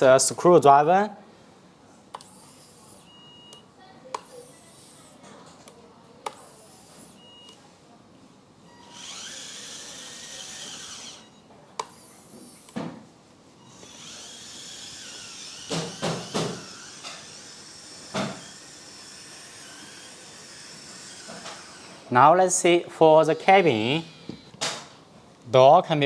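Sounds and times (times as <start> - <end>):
hydraulic pump whining: 8.8 - 12.8, 13.7 - 22.1.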